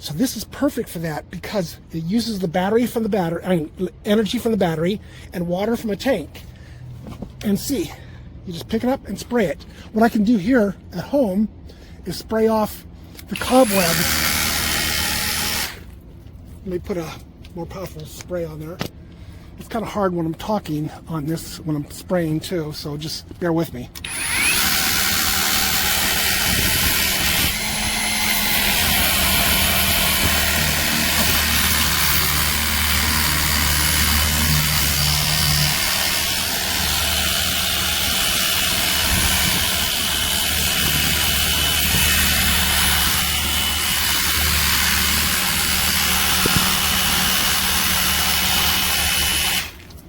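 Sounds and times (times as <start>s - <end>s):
pressure washer pump and motor hum: 24.0s - 50.0s.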